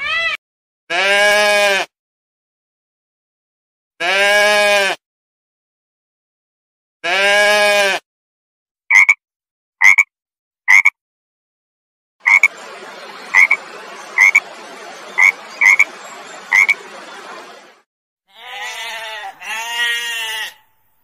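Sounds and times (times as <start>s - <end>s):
loud bleat: 0.0s - 1.9s, 4.0s - 5.0s, 7.0s - 8.1s, 18.3s - 20.8s
frog croaking: 8.9s - 9.2s, 9.8s - 10.1s, 10.7s - 11.0s, 12.2s - 12.7s, 13.3s - 14.5s, 15.2s - 16.8s.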